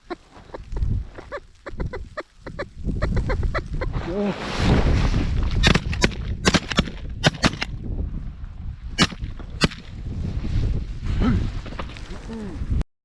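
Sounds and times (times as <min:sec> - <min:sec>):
wind rumbling on microphone: 0:00.0 - 0:12.8
shotgun blasts: 0:05.6 - 0:07.8, 0:09.0 - 0:09.9.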